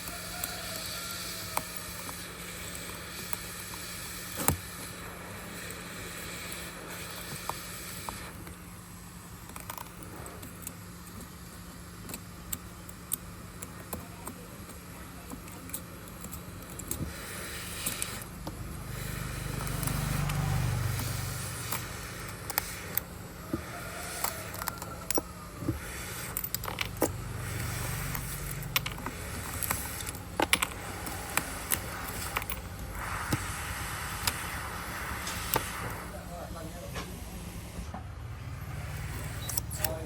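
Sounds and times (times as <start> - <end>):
low electrical hum: 0.0 - 40.0
metal tools clicking and scraping: 12.0 - 18.4, 19.0 - 33.4, 39.1 - 40.0.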